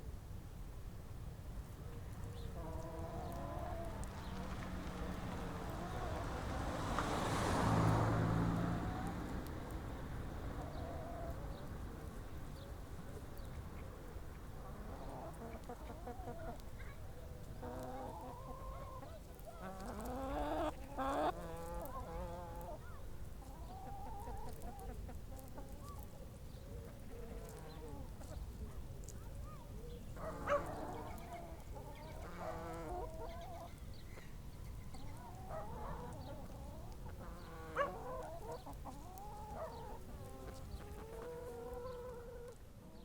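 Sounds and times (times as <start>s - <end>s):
hens clucking: 2.2s - 43.0s.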